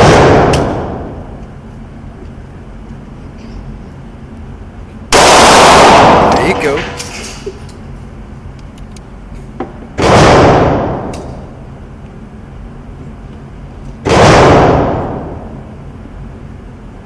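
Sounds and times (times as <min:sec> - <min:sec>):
pistol shots: 0:00.0 - 0:01.2, 0:05.1 - 0:07.1, 0:10.0 - 0:11.4, 0:14.0 - 0:15.6.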